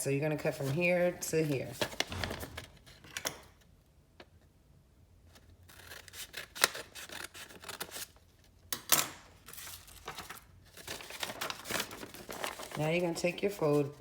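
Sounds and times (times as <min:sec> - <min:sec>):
scissors cutting paper: 0:05.7 - 0:08.1.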